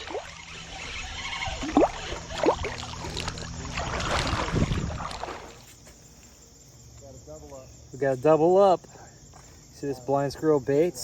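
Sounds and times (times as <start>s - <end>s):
water splashing in a creek: 0.0s - 5.8s.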